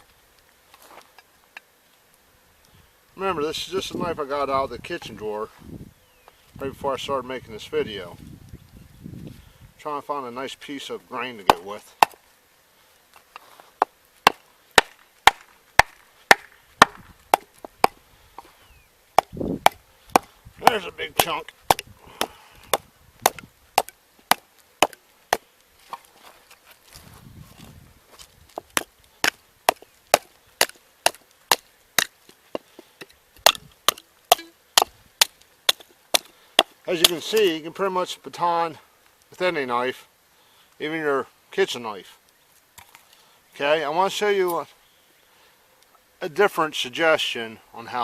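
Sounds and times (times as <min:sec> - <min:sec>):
baton striking knife spine: 0:33.5 - 0:34.9.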